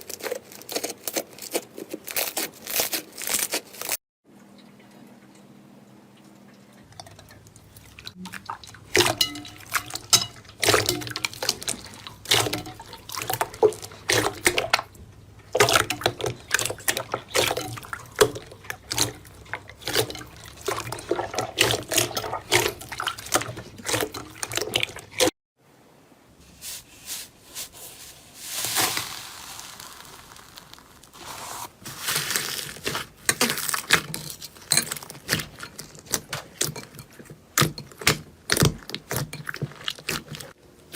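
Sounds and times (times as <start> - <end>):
soft hissy squishing: 26.3 - 40.9.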